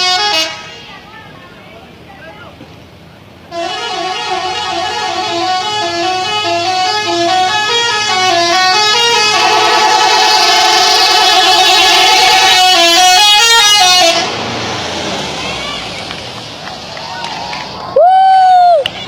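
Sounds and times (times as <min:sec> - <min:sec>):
bus horn playing melody: 0:00.0 - 0:00.9, 0:03.5 - 0:14.5.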